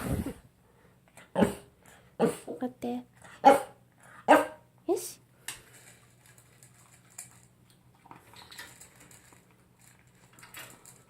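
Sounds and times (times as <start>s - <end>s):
dog eating from a bowl: 5.7s - 11.0s.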